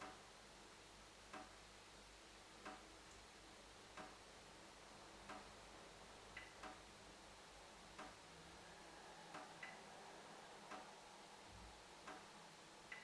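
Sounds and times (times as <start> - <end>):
low steady hiss: 0.0 - 13.0
tap dripping: 2.6 - 2.8.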